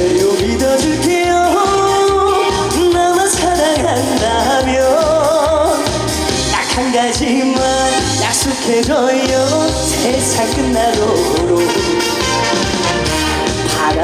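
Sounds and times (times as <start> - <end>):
backing track with steady beat: 0.0 - 14.0
man singing with vibrato: 0.0 - 14.0.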